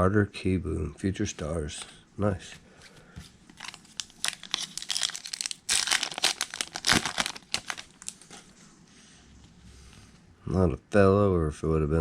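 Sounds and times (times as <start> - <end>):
foil wrapper tearing and crinkling: 3.6 - 8.4.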